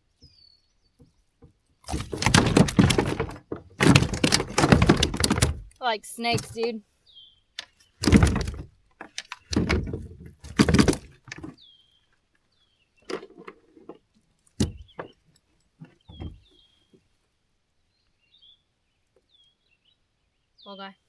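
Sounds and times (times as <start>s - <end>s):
knocks and rustling in a kayak: 0.0s - 6.8s, 7.6s - 11.6s, 13.0s - 17.1s.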